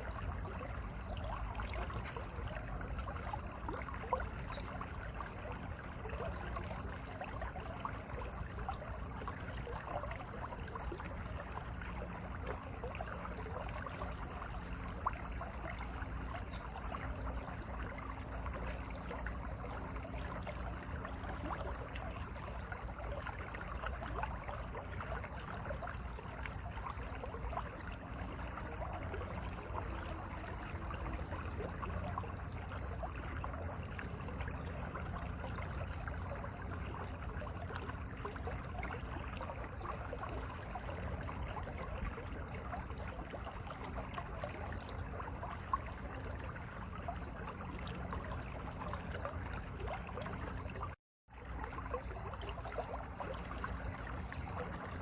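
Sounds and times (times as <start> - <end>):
stream babbling: 0.0 - 55.0.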